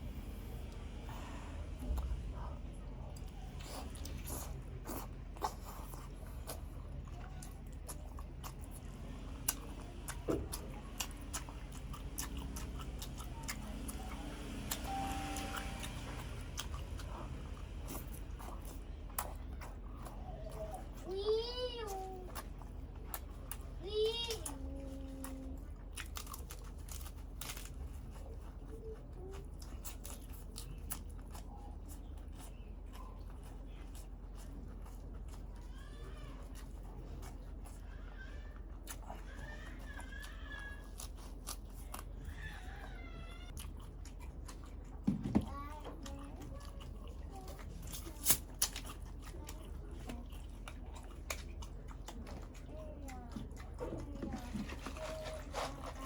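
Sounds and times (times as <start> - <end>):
steady low hum: 0.0 - 23.9
crunching and chewing: 0.0 - 56.0.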